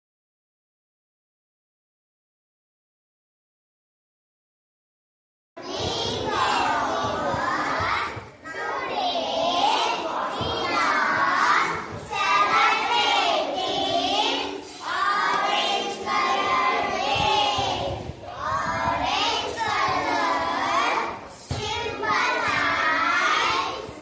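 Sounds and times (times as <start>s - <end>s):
children shouting and cheering: 5.6s - 24.0s.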